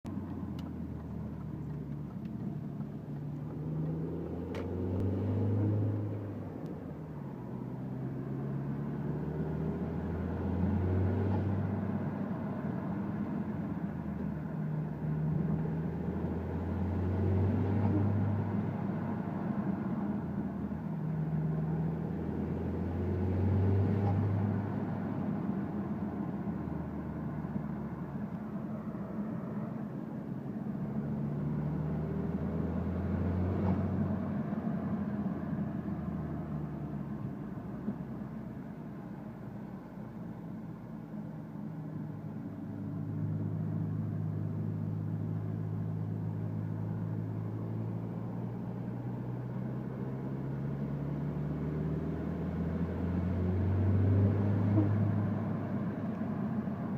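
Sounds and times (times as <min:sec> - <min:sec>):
car engine revving: 0:00.1 - 0:13.2.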